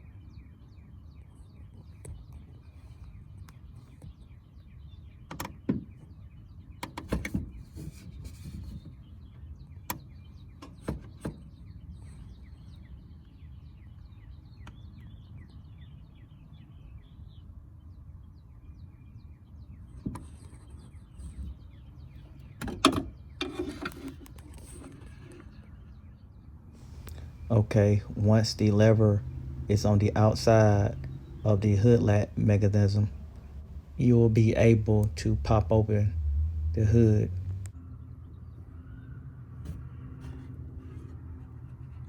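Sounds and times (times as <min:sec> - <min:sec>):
low steady rumble: 0:26.8 - 0:42.0.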